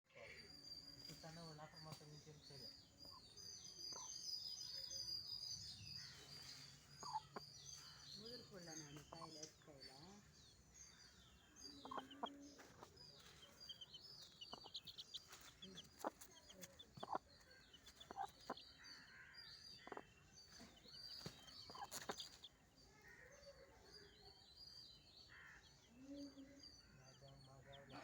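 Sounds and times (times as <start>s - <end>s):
chicks peeping: 1.1s - 5.5s, 6.1s - 22.8s
hen clucking: 7.0s - 7.5s, 9.0s - 9.6s, 11.7s - 18.7s, 19.8s - 22.5s.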